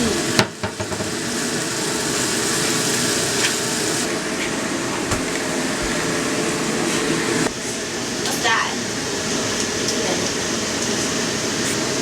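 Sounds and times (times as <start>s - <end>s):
chicken sizzling in oil: 0.0s - 4.8s.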